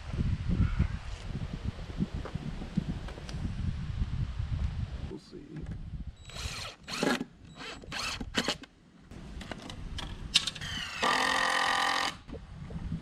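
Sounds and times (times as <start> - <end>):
impact driver driving screws: 6.3 - 8.7, 10.4 - 12.2.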